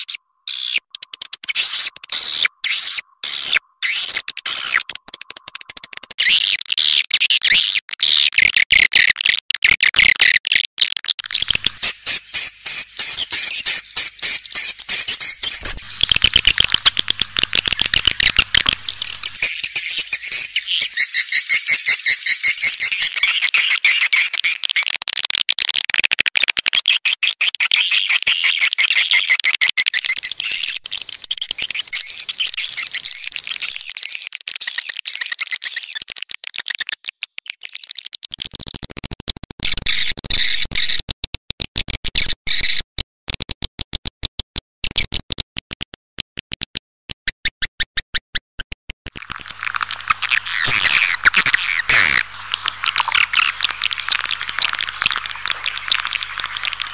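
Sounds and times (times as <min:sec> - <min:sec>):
swiftlets twittering and chirping: 0:00.0 - 0:08.2, 0:11.2 - 0:24.9, 0:27.8 - 0:36.0, 0:49.2 - 0:56.9.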